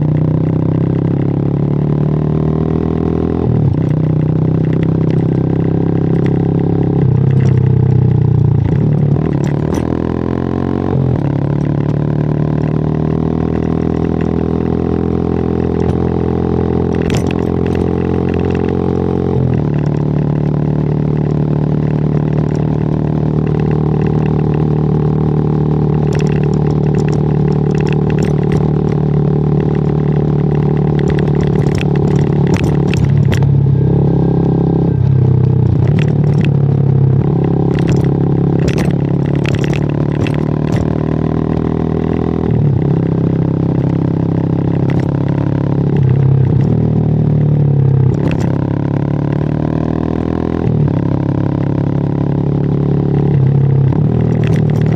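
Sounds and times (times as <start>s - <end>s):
motorcycle engine and exhaust: 0.0s - 54.9s
sharp clicks and knocks: 4.6s - 6.4s, 7.0s - 10.2s, 16.8s - 20.2s, 25.9s - 33.6s, 34.4s - 44.0s, 44.8s - 47.0s, 48.0s - 48.7s, 53.9s - 54.9s.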